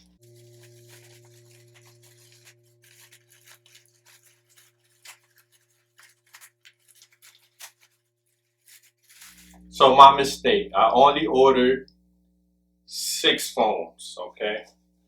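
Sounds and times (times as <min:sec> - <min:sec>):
steady low hum: 0:00.0 - 0:05.2, 0:09.1 - 0:15.0
hands rustling packaging: 0:00.0 - 0:09.8.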